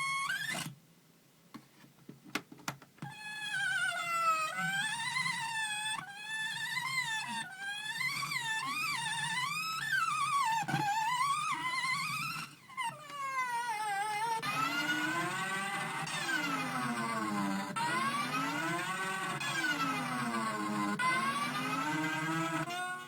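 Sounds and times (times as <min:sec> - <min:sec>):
wailing electronic tone: 0:14.4 - 0:23.0.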